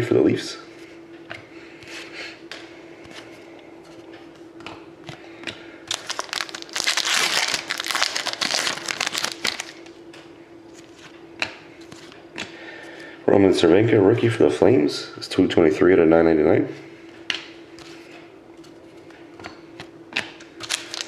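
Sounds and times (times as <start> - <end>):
faint steady hum: 0.0 - 21.0
plastic packaging crinkling: 5.9 - 10.0, 20.6 - 21.0.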